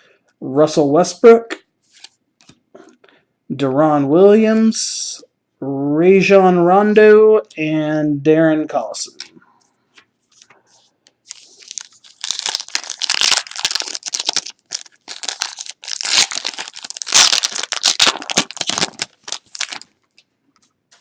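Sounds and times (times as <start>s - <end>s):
wrapper tearing and crinkling: 11.3s - 20.2s.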